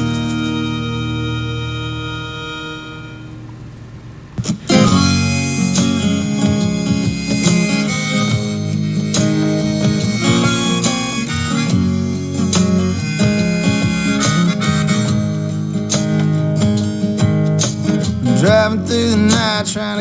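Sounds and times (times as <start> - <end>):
harmonica playing held notes: 0.0 - 3.7, 4.4 - 17.8
strummed acoustic guitar: 0.0 - 20.0.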